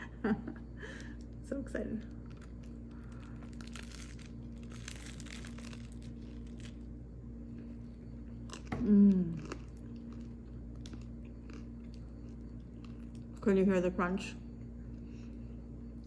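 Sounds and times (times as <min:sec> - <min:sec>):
steady low hum: 0:00.0 - 0:16.0
crunching bites into toasted sandwich: 0:02.2 - 0:07.0
chewing: 0:07.5 - 0:13.4.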